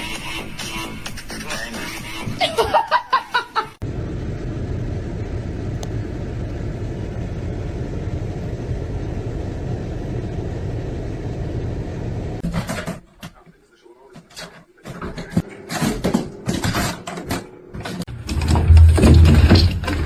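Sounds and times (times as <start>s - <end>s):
music: 0.0s - 2.5s
steady low rumble: 3.8s - 12.4s.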